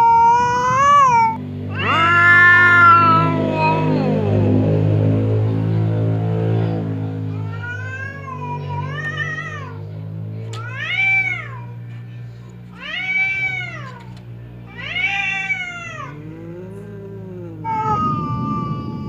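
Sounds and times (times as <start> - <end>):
cats yowling: 0.0 - 9.9, 10.5 - 11.9, 12.7 - 19.0
steady low hum: 8.8 - 19.0.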